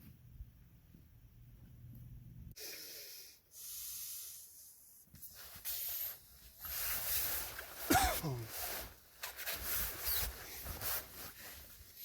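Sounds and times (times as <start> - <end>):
heavy hissing breaths: 2.6 - 4.9.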